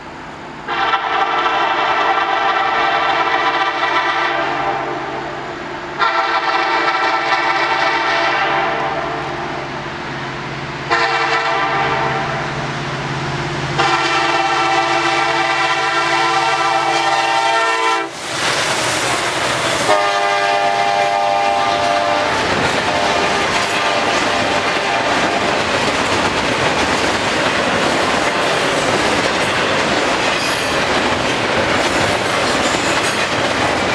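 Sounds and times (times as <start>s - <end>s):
locomotive horn: 0.7s - 5.4s, 6.0s - 9.6s, 10.9s - 12.6s, 13.8s - 18.2s, 19.7s - 25.7s
locomotives passing in a rush: 0.7s - 33.9s
train cars clattering on rails: 10.7s - 33.9s.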